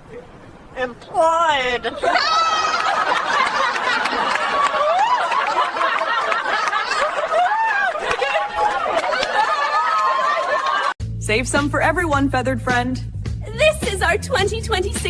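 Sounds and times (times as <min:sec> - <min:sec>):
people laughing: 0:01.8 - 0:11.0.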